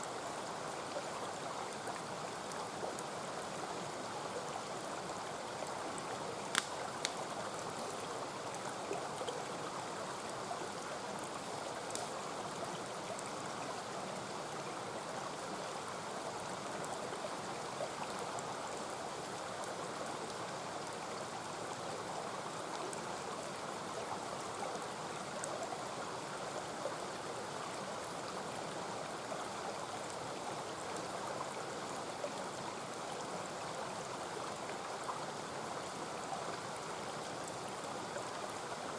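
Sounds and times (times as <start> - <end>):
campfire popping: 6.5 - 7.2.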